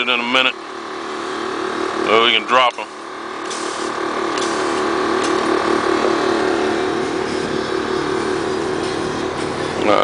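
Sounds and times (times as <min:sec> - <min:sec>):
air suspension mechanical hum: 0:00.0 - 0:10.0
air hiss: 0:03.4 - 0:04.9.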